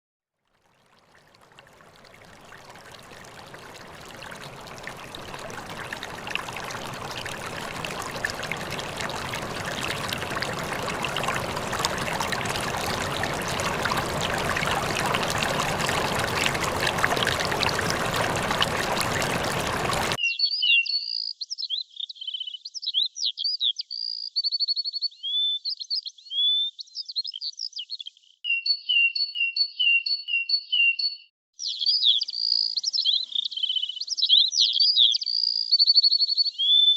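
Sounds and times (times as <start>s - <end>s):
water flowing and splashing: 0.5s - 20.2s
bird song chirps and whistles: 20.2s - 36.9s.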